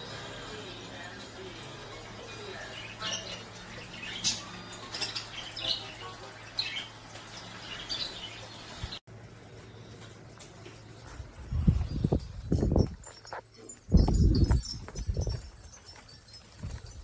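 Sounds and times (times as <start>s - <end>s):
bird chirping: 0.0s - 9.0s.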